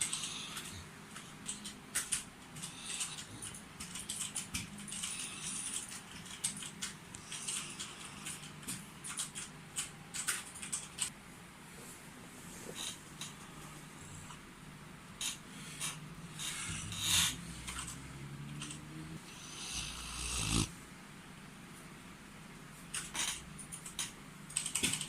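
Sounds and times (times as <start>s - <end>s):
dog snoring: 15.2s - 17.8s, 18.6s - 20.7s.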